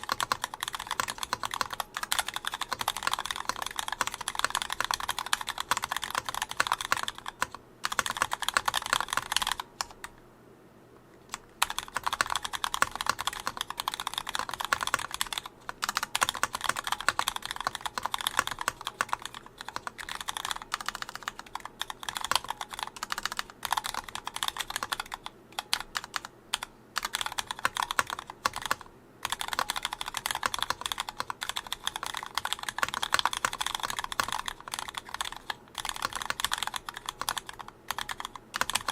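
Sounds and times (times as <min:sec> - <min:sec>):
mechanical keyboard typing: 0:00.0 - 0:10.1, 0:11.3 - 0:38.9.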